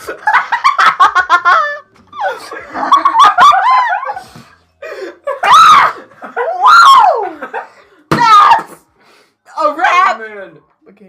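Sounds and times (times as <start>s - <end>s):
people laughing and shrieking: 0.0s - 4.4s, 5.0s - 7.6s
loud high yells: 5.4s - 7.3s, 8.1s - 8.8s.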